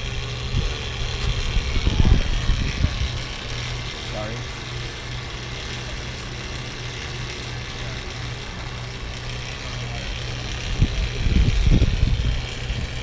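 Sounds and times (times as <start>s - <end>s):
steady low hum: 0.0s - 13.0s
wind gusts buffeting microphone: 0.4s - 3.4s, 10.6s - 13.0s.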